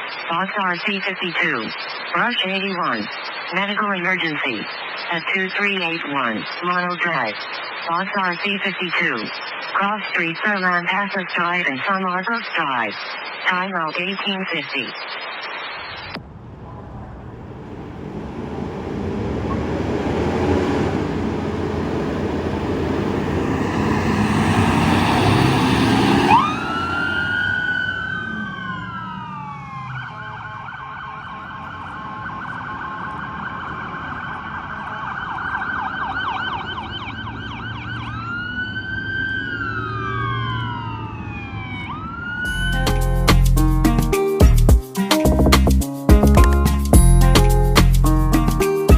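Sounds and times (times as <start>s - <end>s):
heavy vehicle rumble: 16.2s - 30.5s
fire truck siren: 17.8s - 43.0s
music: 42.5s - 48.9s.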